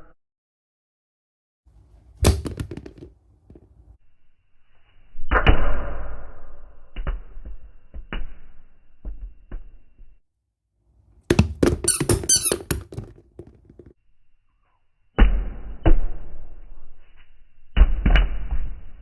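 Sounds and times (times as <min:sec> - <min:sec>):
knocks: 0:02.2 - 0:03.6, 0:11.3 - 0:13.9
slowed rubber duck squeak: 0:11.6 - 0:13.0.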